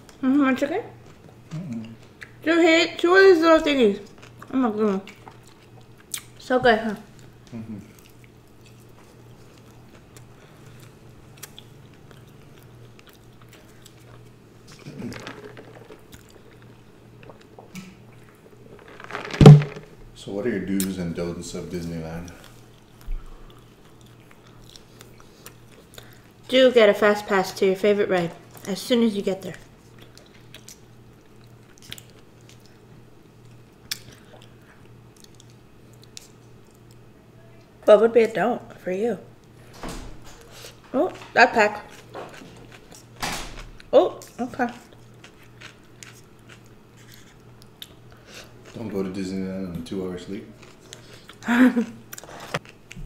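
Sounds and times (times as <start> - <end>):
faint low hum: 0.0 - 53.0
person chewing: 1.0 - 2.4, 4.1 - 6.4, 7.1 - 19.4, 22.3 - 26.4, 29.8 - 37.0, 44.2 - 48.8, 50.6 - 53.0
person chewing and biting food: 44.9 - 48.8.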